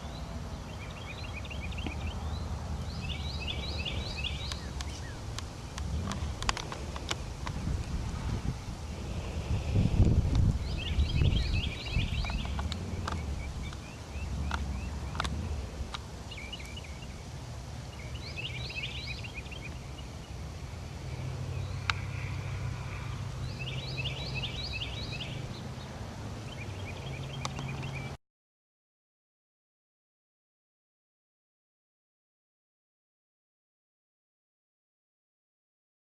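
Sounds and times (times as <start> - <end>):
songbird chirping: 0.0 - 28.2
sharp clicks: 4.4 - 8.0, 12.1 - 16.8.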